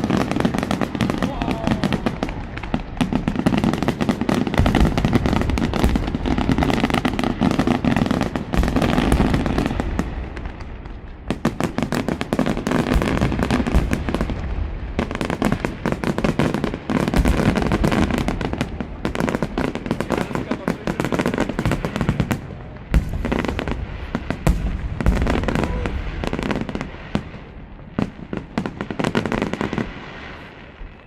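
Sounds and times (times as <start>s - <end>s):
fireworks bangs and crackles: 0.0s - 31.0s.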